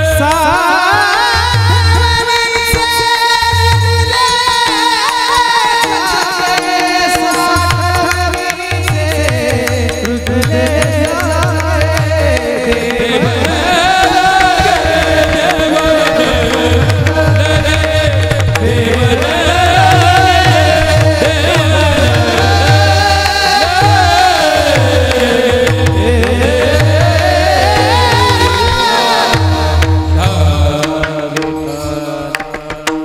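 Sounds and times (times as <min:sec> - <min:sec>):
person singing devotional song: 0:00.0 - 0:33.0
hand drum beat: 0:03.6 - 0:33.0.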